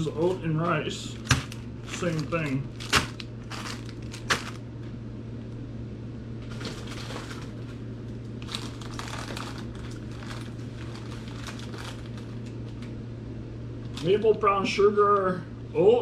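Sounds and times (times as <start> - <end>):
plastic packets crinkling: 0.0 - 4.7, 6.5 - 12.9
steady low hum: 0.0 - 16.0.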